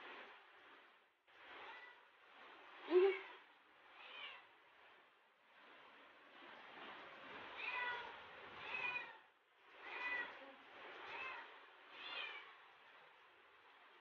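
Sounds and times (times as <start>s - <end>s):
cat meowing: 7.6s - 9.2s, 11.1s - 12.6s.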